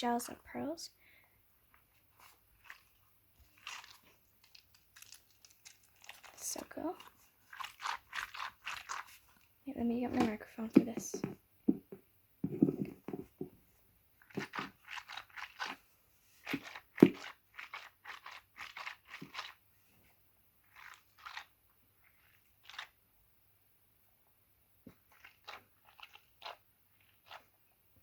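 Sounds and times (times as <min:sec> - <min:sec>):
squishy stress ball squishing: 0:02.0 - 0:09.5, 0:14.2 - 0:15.8, 0:16.4 - 0:19.6, 0:20.6 - 0:23.0, 0:24.9 - 0:27.5.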